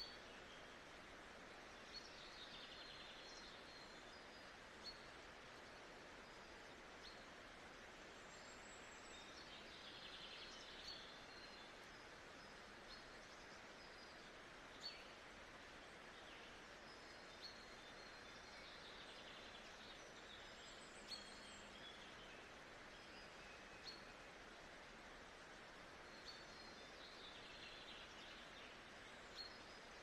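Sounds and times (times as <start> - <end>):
soft steady hiss: 0.0 - 30.0.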